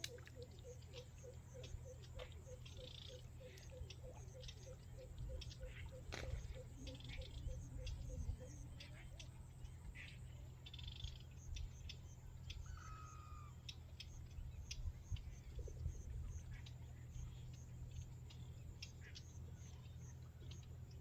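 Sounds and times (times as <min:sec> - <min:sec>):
low steady rumble: 0:00.0 - 0:21.0.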